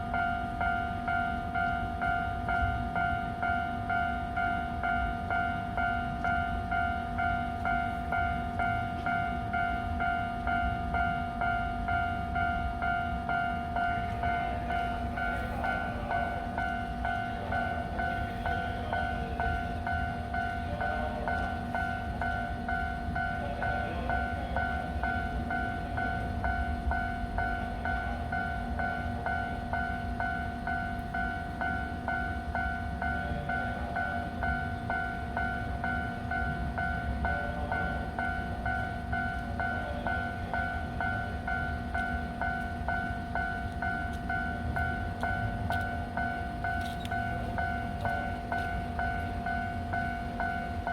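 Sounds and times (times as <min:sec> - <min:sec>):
electric train humming: 0:00.0 - 0:50.9
level crossing bell ringing: 0:00.0 - 0:50.9.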